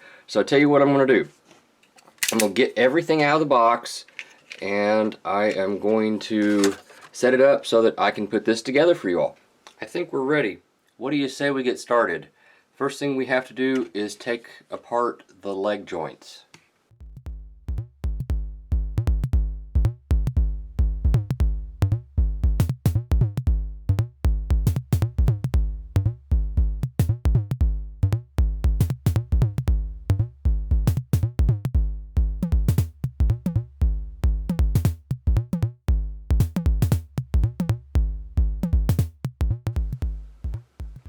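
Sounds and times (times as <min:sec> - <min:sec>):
electronic music with drum beat: 0:17.0 - 0:41.0.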